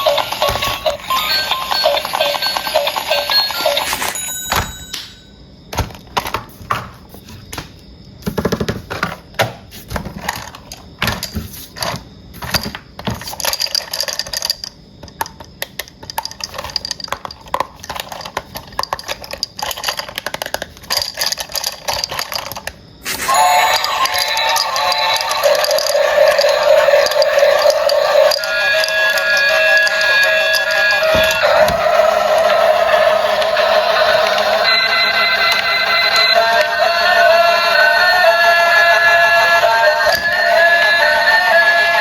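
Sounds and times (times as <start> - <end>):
plastic rattling: 10.1 - 22.8.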